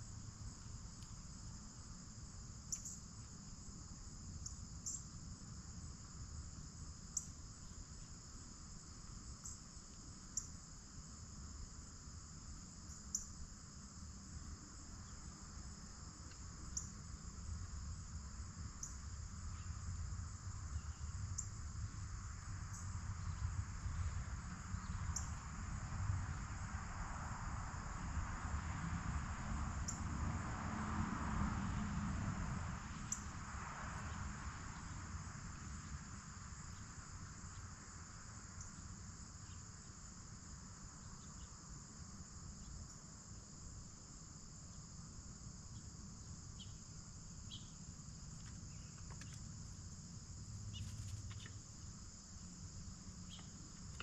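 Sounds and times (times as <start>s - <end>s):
insects chirping: 0.0s - 54.0s
faint ticks: 0.6s - 1.6s, 16.2s - 16.9s.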